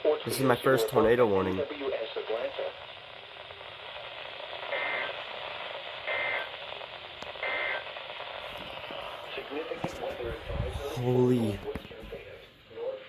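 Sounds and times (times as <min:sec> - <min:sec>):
radio hiss: 0:00.0 - 0:13.0
buzzy two-tone data bursts: 0:06.0 - 0:06.6, 0:07.4 - 0:08.0.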